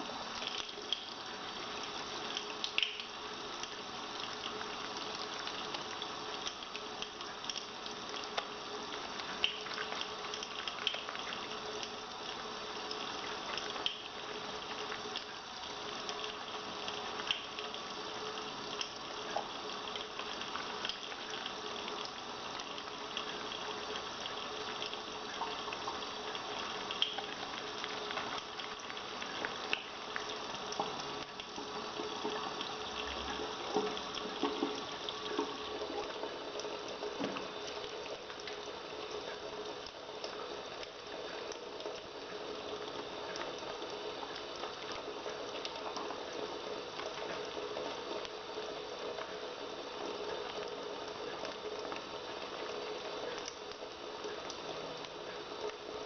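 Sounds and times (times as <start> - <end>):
tap water running into sink: 26.8 - 38.6.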